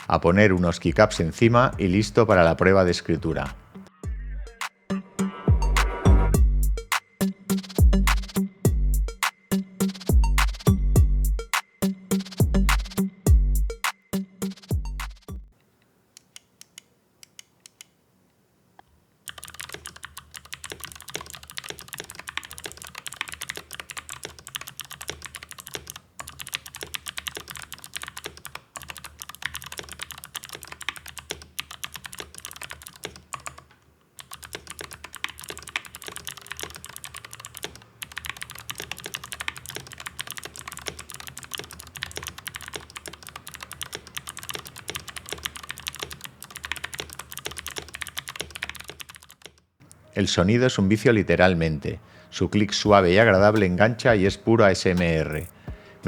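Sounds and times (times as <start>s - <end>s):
mechanical keyboard typing clicks: 19.3s - 50.0s.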